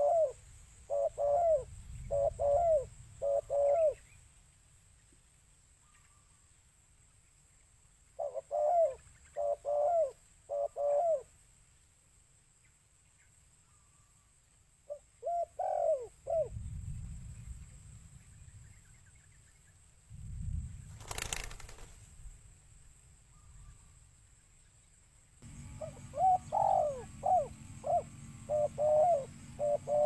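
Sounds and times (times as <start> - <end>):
dove cooing: 0.0 - 4.0, 8.2 - 11.3, 14.9 - 16.5, 25.4 - 30.0
low rumble: 16.5 - 19.0, 20.1 - 21.0.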